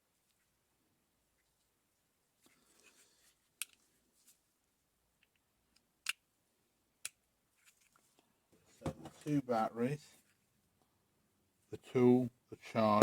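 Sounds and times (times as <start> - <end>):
soft handling rustle: 1.2 - 5.4, 7.5 - 10.5.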